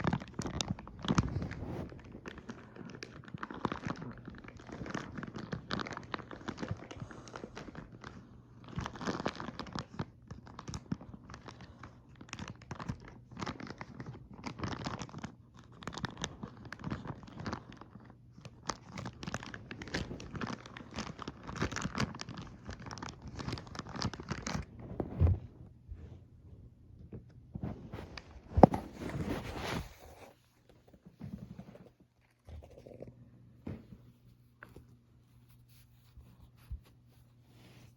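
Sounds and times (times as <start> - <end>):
packaging crinkling and tearing: 0.0 - 24.8.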